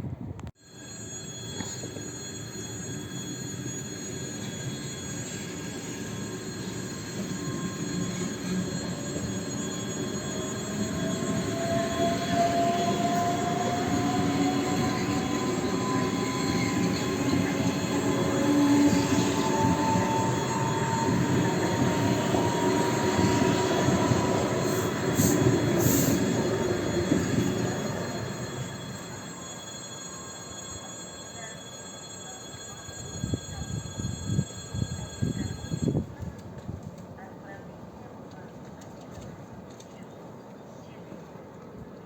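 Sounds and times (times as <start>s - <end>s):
electric train rumbling on rails: 0.0s - 42.0s.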